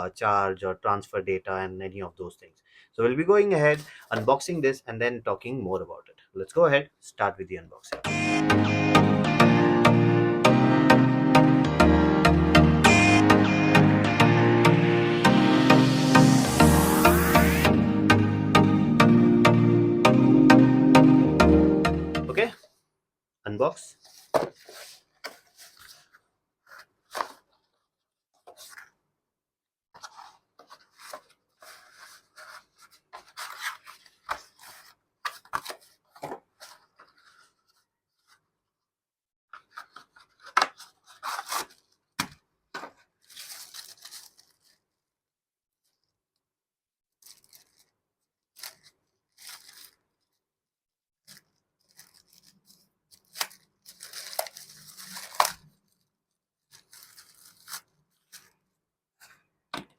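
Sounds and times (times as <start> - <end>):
packaging rustling and tearing: 24.0 - 27.8, 28.5 - 28.9, 30.0 - 38.4, 39.6 - 42.2, 42.8 - 45.0, 47.1 - 50.5, 51.2 - 58.6.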